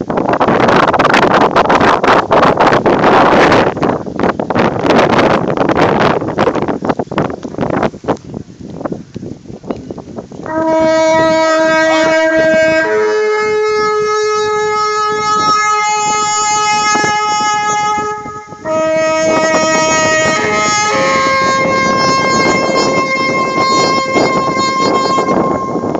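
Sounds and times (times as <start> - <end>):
wind noise: 0.0 - 25.9
brass horn playing long notes: 10.4 - 25.9.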